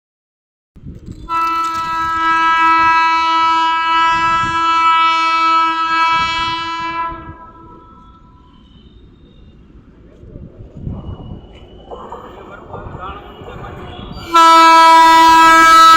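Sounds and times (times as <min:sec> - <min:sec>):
train rumble: 0:00.8 - 0:15.9
locomotive horn blast: 0:01.3 - 0:08.4, 0:13.2 - 0:15.9.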